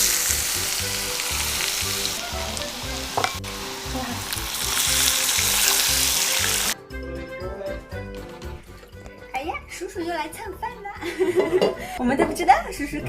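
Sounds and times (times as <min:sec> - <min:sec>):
food sizzling in a pan: 0:00.0 - 0:06.8
background music: 0:00.0 - 0:13.0.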